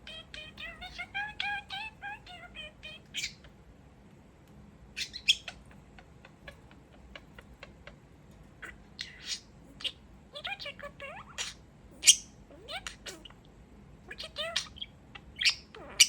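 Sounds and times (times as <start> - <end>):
budgerigar high chirps: 0.1 - 3.5, 5.0 - 8.0, 8.6 - 13.3.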